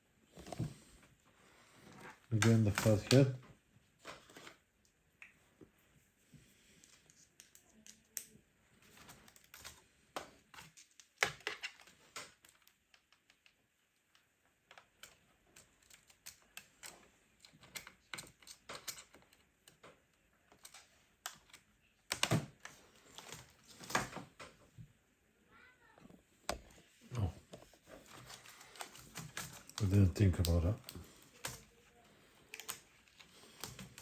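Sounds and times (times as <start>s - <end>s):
laptop keyboard plastic clicks: 20.6s - 22.7s, 32.5s - 34.0s.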